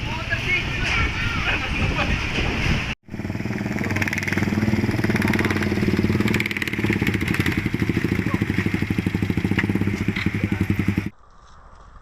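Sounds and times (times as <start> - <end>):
street noise: 0.0 - 12.0
motorcycle engine running: 3.1 - 11.1.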